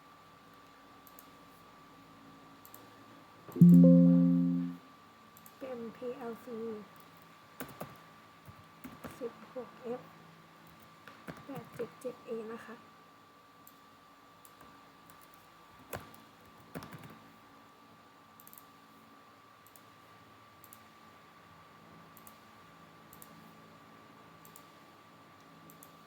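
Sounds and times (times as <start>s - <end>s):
faint high-pitched tone: 3.6s - 4.8s.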